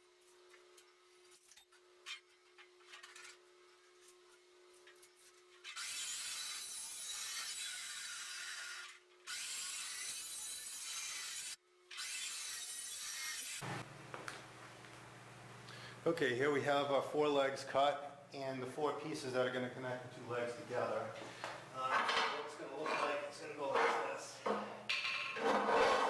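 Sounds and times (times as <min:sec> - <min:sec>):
power tool cutting steel: 0:05.7 - 0:13.7.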